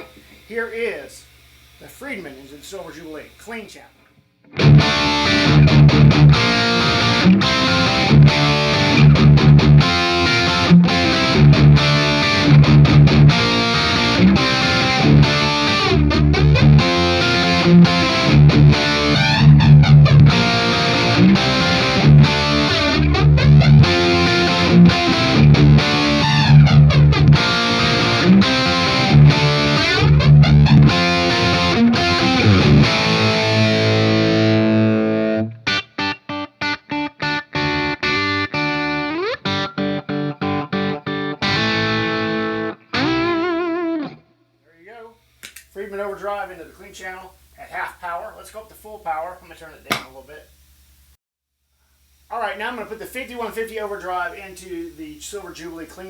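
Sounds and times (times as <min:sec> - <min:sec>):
distorted electric guitar riff: 0:00.0 - 0:44.2.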